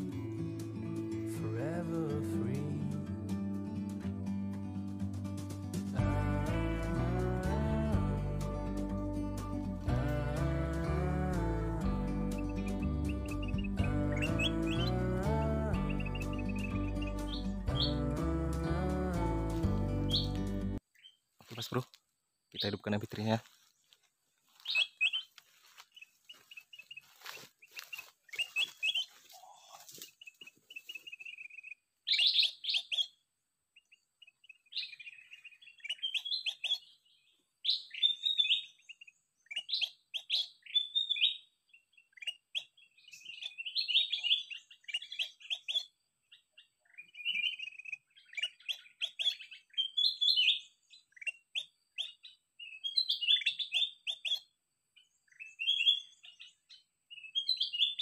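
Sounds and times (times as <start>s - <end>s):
recorded bird song chirping: 0.0s - 58.0s.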